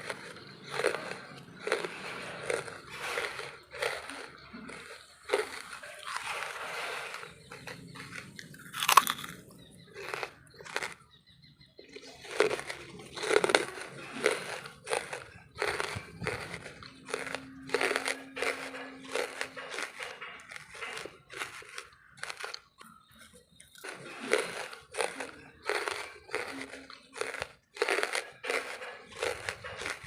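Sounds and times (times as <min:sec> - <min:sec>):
charcoal being chewed: 0:00.0 - 0:30.0.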